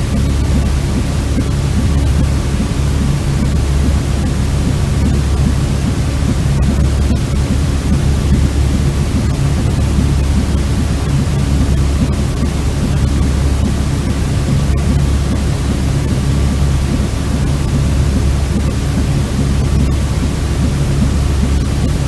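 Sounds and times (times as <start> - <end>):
faint steady hum: 0.0 - 22.0
steady white noise: 0.0 - 22.0.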